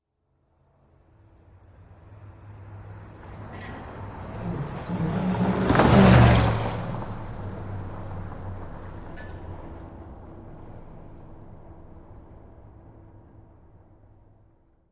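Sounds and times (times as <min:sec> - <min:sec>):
car passing at speed: 0:01.7 - 0:11.6.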